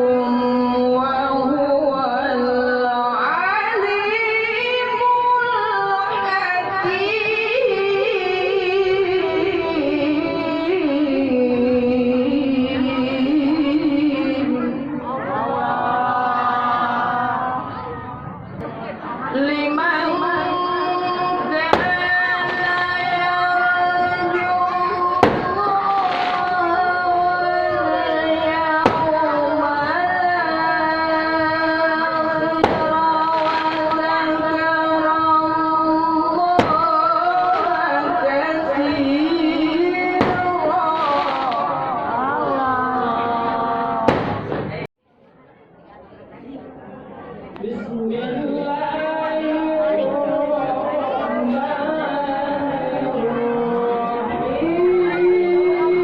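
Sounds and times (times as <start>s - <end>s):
person reciting melismatic chant: 0.0s - 18.1s, 19.2s - 44.9s, 47.6s - 56.0s.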